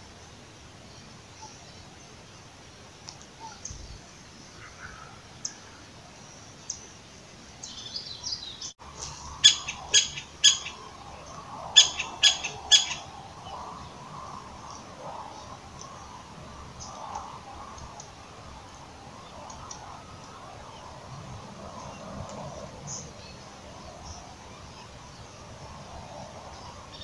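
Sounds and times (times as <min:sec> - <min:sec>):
bird chirping: 0:07.6 - 0:20.9.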